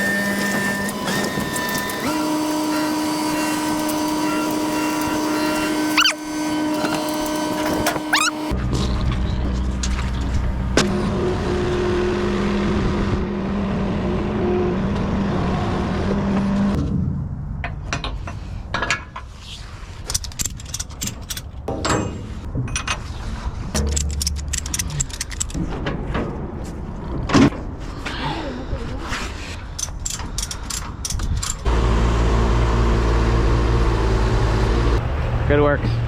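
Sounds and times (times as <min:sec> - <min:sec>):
engine running: 0:00.0 - 0:08.9, 0:31.6 - 0:36.0
metallic clicks and clanks: 0:20.1 - 0:23.1, 0:23.7 - 0:26.1, 0:29.7 - 0:31.7.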